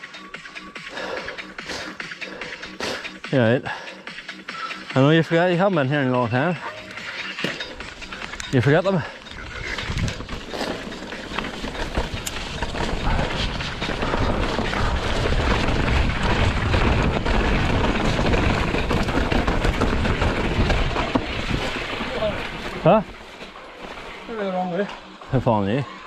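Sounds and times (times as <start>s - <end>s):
bike rattling over rough trail: 0.1s - 26.0s
tyres on dirt: 0.1s - 26.0s
wind buffeting microphone: 9.3s - 10.6s, 11.2s - 22.8s.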